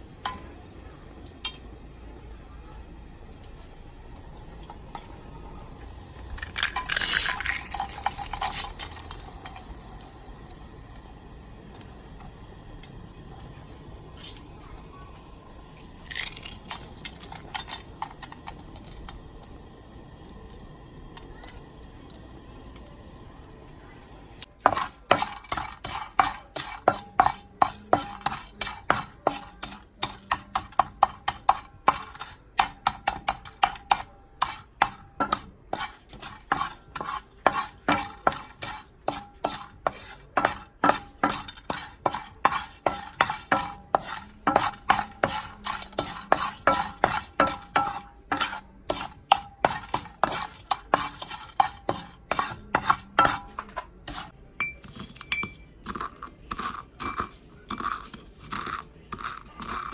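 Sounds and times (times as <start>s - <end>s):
utensil clinking against bowl: 24.6s - 59.9s.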